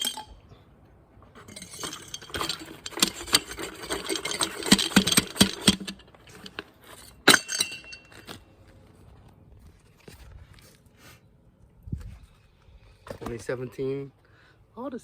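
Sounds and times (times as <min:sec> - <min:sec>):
metal parts clinking and rattling: 0:00.0 - 0:00.4, 0:01.4 - 0:08.5.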